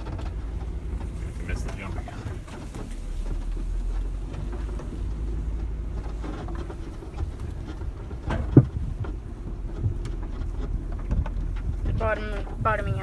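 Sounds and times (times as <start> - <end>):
car body rattles and clicks: 0.0 - 13.0
engine and road rumble: 0.0 - 13.0.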